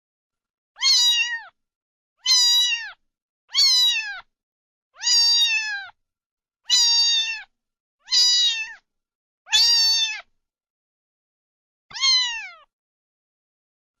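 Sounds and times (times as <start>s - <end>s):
kitten meowing: 0.8s - 1.6s, 2.2s - 4.3s, 5.0s - 6.0s, 6.7s - 7.5s, 8.1s - 8.8s, 9.5s - 10.3s, 11.9s - 12.7s.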